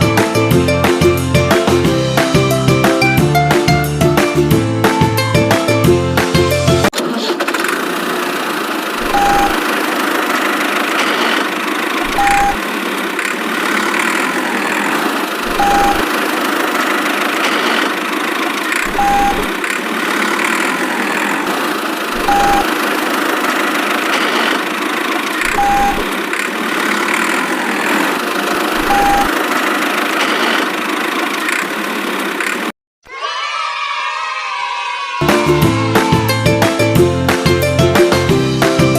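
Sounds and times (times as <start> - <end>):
engine running: 0.0 - 32.8
short high beeps: 9.1 - 9.6, 12.1 - 12.6, 15.5 - 16.0, 18.9 - 19.5, 22.2 - 22.7, 25.5 - 26.1, 28.8 - 29.3.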